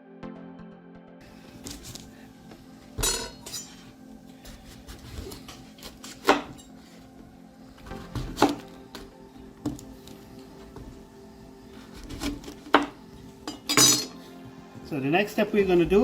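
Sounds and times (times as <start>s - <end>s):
utensils and dishes clattering: 1.6s - 2.1s, 3.0s - 7.0s, 11.8s - 14.3s.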